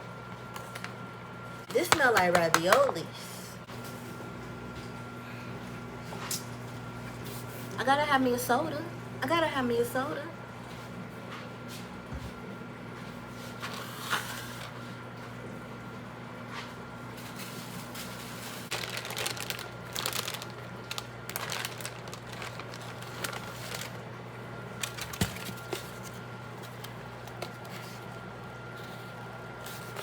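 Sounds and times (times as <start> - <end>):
steady low hum: 0.0 - 30.0
food packaging rustling and crinkling: 13.4 - 15.0, 16.5 - 30.0.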